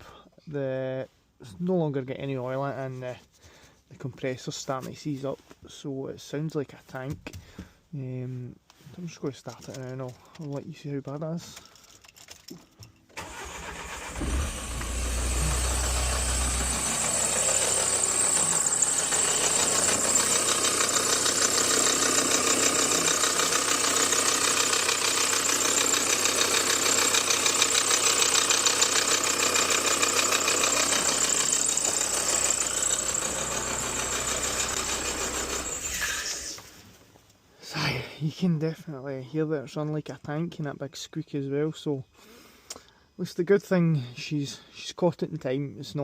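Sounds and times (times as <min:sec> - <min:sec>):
car engine running: 0:13.2 - 0:36.1
loud squeak: 0:35.6 - 0:36.6.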